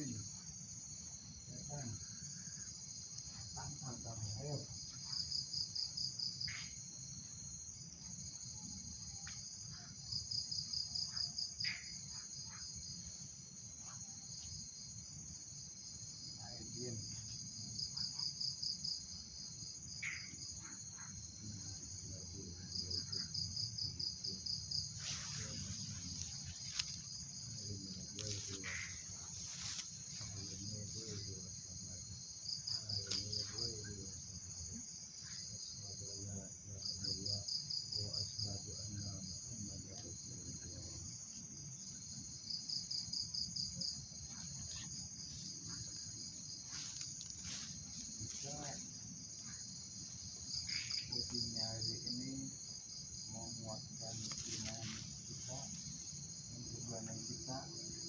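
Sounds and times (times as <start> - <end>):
insects trilling: 0.0 - 58.0
pulsed insect chirps: 44.6 - 58.0.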